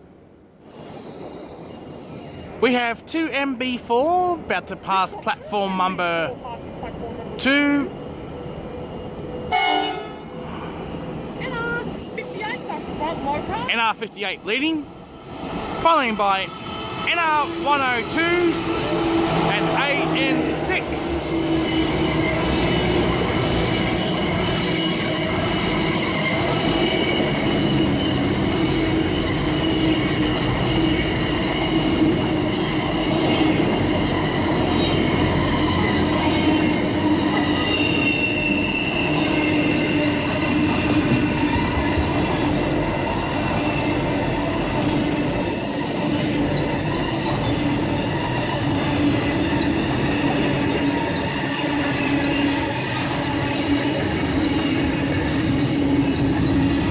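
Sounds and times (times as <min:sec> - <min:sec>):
freight train rolling on rails: 0:00.0 - 0:56.9
train wheels squealing: 0:00.8 - 0:02.5, 0:10.2 - 0:12.8, 0:21.1 - 0:56.9.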